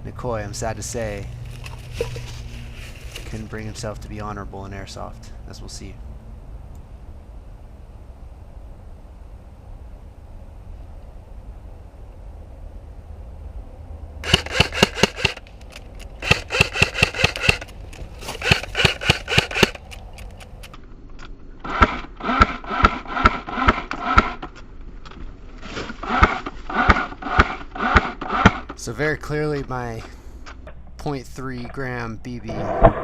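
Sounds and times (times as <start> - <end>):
rapid airsoft gun fire: 14.2 - 15.4, 16.2 - 17.7, 18.4 - 19.9.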